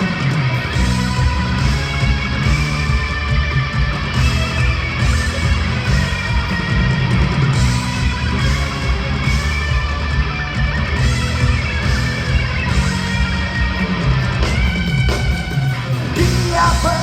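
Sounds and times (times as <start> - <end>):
electric guitar: 0.0 - 17.0
rock band playing live: 0.0 - 17.0.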